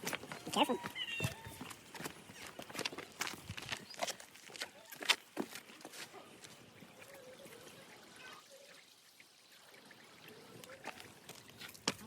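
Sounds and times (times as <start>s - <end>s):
faint trickle of running water: 5.7s - 12.0s.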